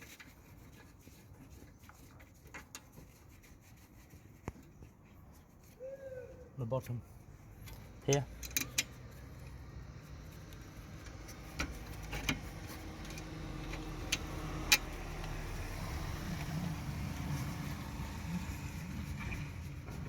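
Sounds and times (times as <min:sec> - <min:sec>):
metallic clicks of tools: 0:07.6 - 0:09.6.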